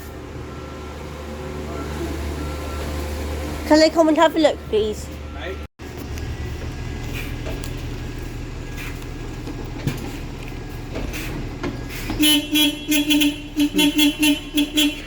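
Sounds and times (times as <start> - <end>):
bus engine idling: 0.0 - 15.0
bus horn toots: 12.1 - 15.0.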